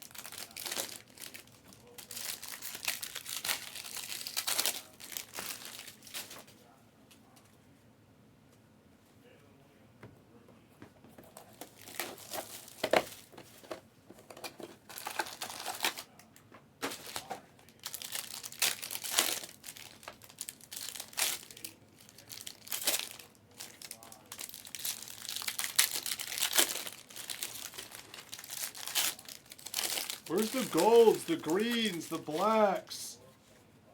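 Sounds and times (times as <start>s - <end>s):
foil packs being torn open: 0.0s - 6.4s, 14.9s - 16.1s, 16.8s - 32.6s
wrappers crinkling: 0.0s - 6.5s, 14.9s - 16.1s, 16.8s - 33.0s.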